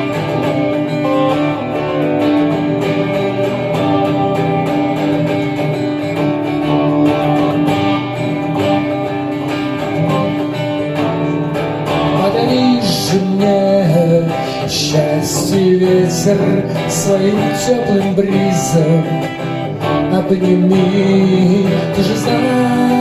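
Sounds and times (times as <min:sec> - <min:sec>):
guitar strumming chords: 0:00.0 - 0:23.0
person singing: 0:09.9 - 0:23.0.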